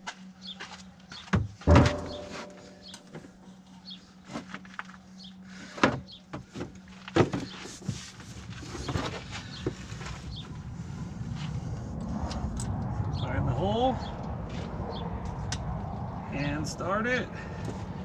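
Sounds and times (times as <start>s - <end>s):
sharp knock with ringing: 1.7s - 2.9s.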